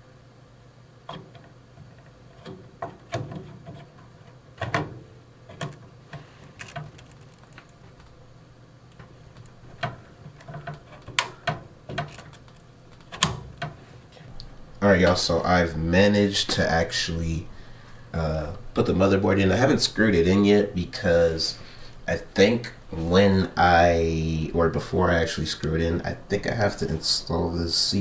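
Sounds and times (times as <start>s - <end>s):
steady low hum: 0.0s - 28.0s
computer parts clicking and knocking: 1.1s - 8.2s, 8.9s - 13.8s.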